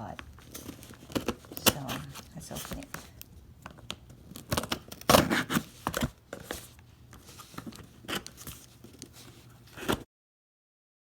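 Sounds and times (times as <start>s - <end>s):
tape and packaging tearing: 4.2s - 6.1s.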